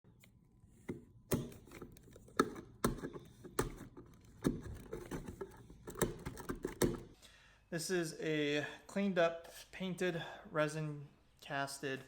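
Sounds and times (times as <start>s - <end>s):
hard objects knocking and clicking: 0.9s - 7.1s.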